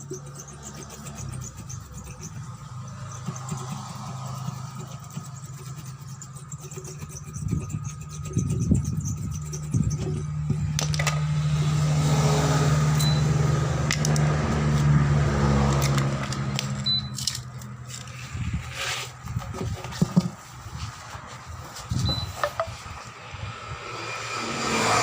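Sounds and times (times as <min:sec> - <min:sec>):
metallic clicks and knocks: 0:10.0 - 0:11.3, 0:22.4 - 0:22.7.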